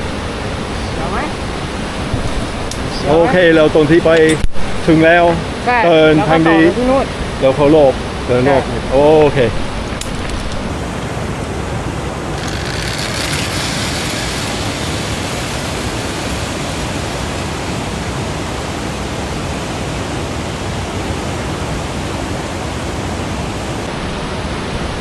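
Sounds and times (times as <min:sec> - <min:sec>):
waterfall roaring: 0:10.7 - 0:23.9.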